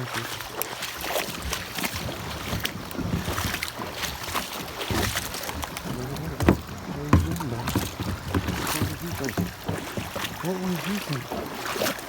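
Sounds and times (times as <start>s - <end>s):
water splashing and sloshing: 0.0s - 12.0s
knocks and clatter: 2.2s - 10.7s.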